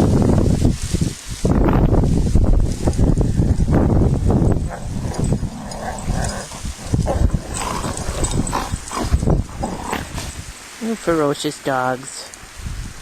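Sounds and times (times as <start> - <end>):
wind rumbling on microphone: 0.0 - 11.2, 12.4 - 13.0
dogs growling and barking: 4.2 - 10.6.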